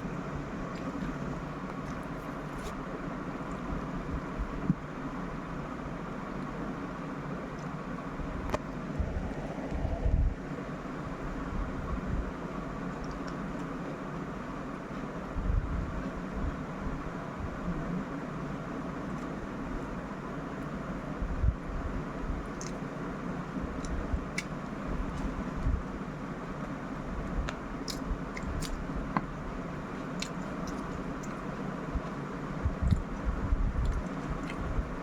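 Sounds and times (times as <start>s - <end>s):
steady background hum: 0.0s - 35.0s
person chewing and eating: 0.4s - 2.8s, 22.3s - 25.9s, 26.6s - 35.0s
wet clicks and smacks: 22.5s - 22.9s, 23.8s - 25.7s, 27.4s - 29.4s, 30.0s - 31.5s, 32.8s - 34.8s.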